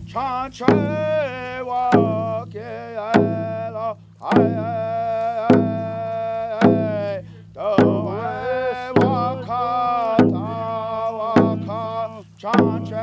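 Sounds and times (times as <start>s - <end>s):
hand drum beats: 0.0s - 13.0s
voices singing: 0.0s - 13.0s.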